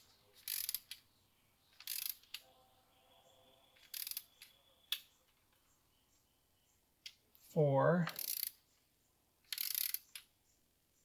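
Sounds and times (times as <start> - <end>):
torque wrench ratchet clicking: 0.4 - 1.0, 1.8 - 2.2, 3.8 - 4.2, 8.1 - 8.6, 9.5 - 10.2.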